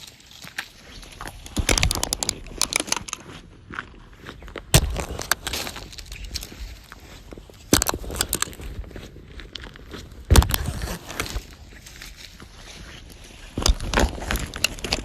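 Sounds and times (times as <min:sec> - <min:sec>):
plastic crunching under sole: 0:00.0 - 0:15.0
boot stomping thuds: 0:04.7 - 0:05.9.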